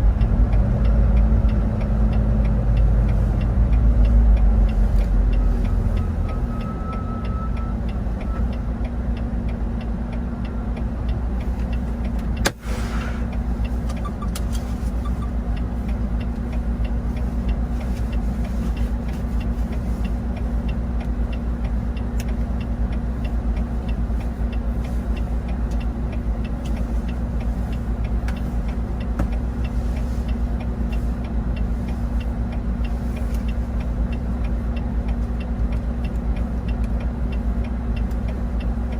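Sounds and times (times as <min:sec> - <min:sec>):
truck engine and road drone: 0:00.0 - 0:38.9.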